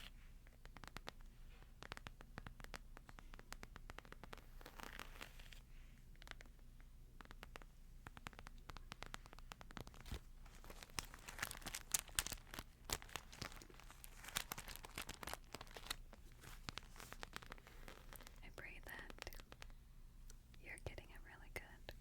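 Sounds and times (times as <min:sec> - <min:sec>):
thin paper crinkling: 0:09.6 - 0:19.6.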